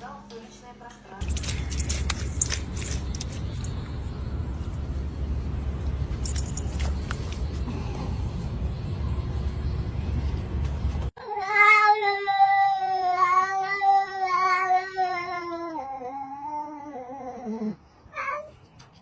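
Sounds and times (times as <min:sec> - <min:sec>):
cat yowling: 0:11.2 - 0:18.5.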